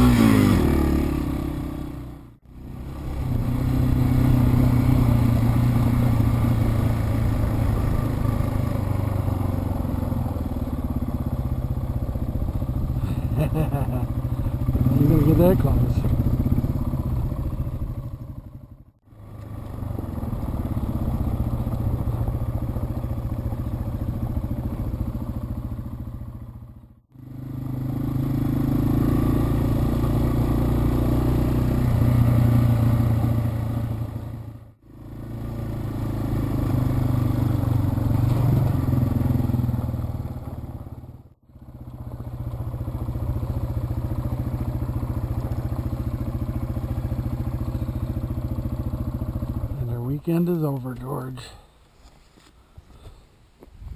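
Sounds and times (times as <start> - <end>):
motorcycle engine running: 0.0 - 51.7.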